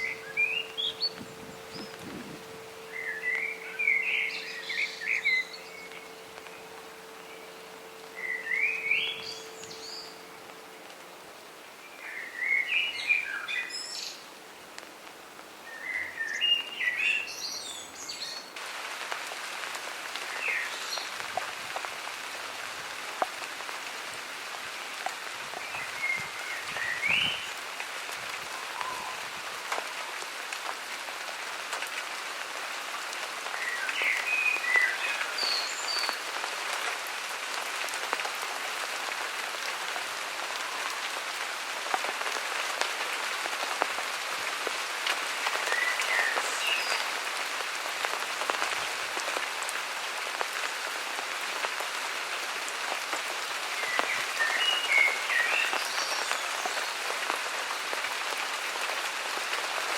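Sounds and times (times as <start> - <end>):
birds chirping: 0.0 - 14.3, 33.5 - 36.4, 45.5 - 47.2, 53.7 - 57.1
rain hissing: 0.0 - 59.9.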